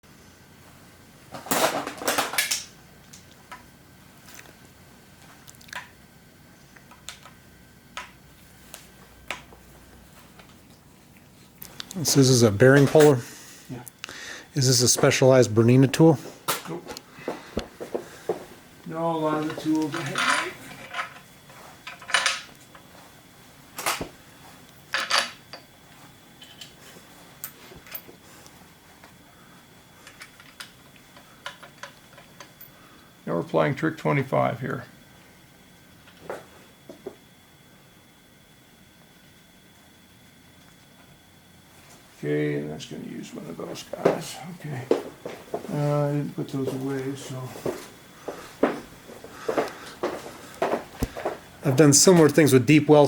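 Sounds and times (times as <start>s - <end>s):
metal tools clattering and clinking: 19.4s - 21.2s.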